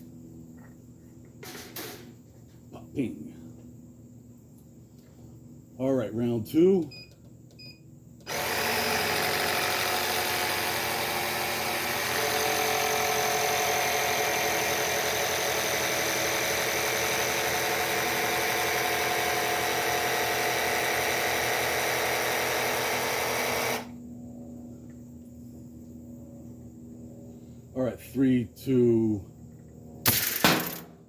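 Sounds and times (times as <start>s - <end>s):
air compressor running: 8.2s - 24.0s.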